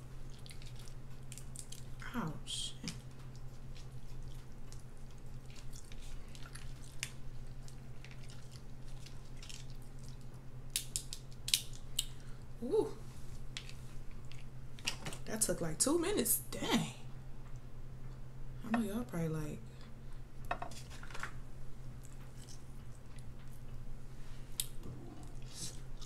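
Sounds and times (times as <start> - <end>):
low steady hum: 0.0 - 26.0
crab shell cracking: 0.3 - 2.0, 2.9 - 12.2.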